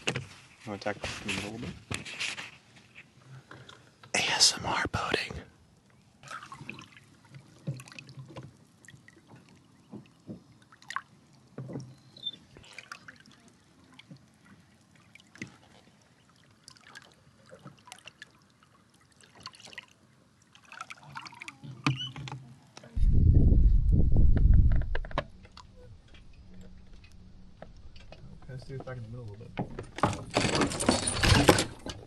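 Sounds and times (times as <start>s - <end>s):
water lapping along boat hull: 5.7s - 23.0s.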